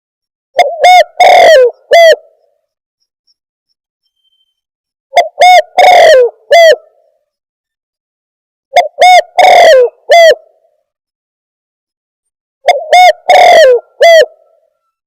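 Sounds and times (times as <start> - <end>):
dove cooing: 0.6 - 2.4, 5.2 - 7.0, 8.8 - 10.6, 12.6 - 14.6.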